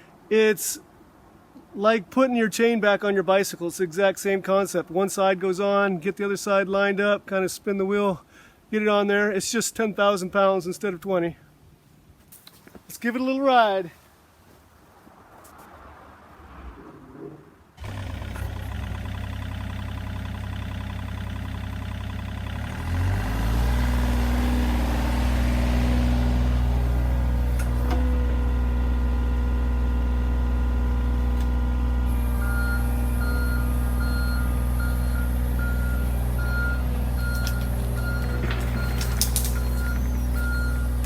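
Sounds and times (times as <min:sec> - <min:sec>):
excavator diesel engine: 0:17.8 - 0:41.0
travel alarm beeping: 0:32.3 - 0:41.0.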